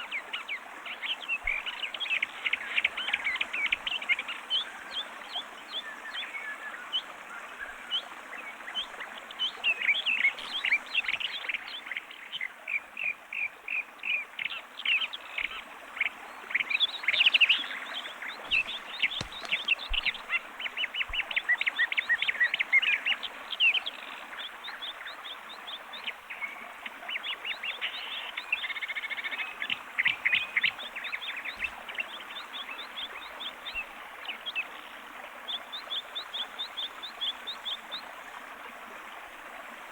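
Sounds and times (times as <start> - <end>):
many small birds chirping: 14.4 - 34.8.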